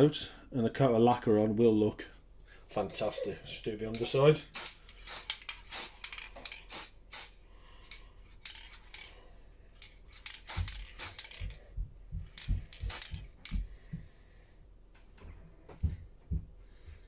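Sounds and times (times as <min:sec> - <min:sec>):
aerosol spray can hissing: 0:04.5 - 0:07.4, 0:10.1 - 0:11.6, 0:12.4 - 0:13.6.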